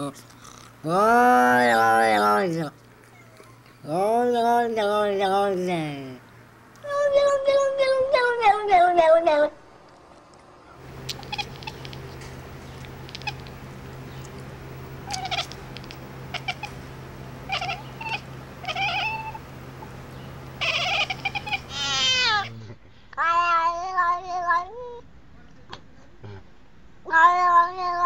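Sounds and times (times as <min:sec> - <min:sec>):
cats meowing: 0:03.0 - 0:03.9, 0:10.8 - 0:19.5, 0:20.5 - 0:22.6, 0:23.2 - 0:25.0, 0:27.0 - 0:28.0
cat yowling: 0:11.0 - 0:12.2, 0:12.9 - 0:13.5, 0:15.0 - 0:16.8, 0:17.4 - 0:19.4, 0:20.6 - 0:22.5, 0:23.2 - 0:25.0, 0:27.1 - 0:28.0.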